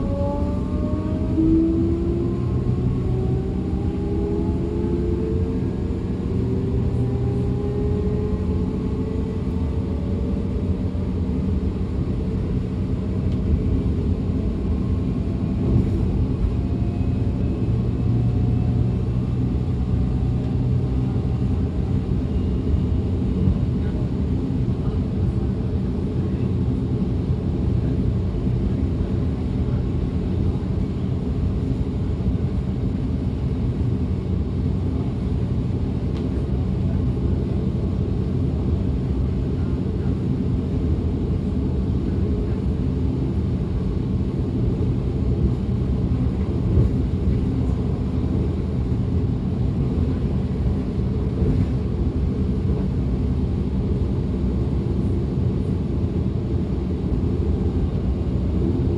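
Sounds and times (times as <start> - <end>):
train wheels rumbling on rail: 44.5 - 49.0, 49.8 - 52.8.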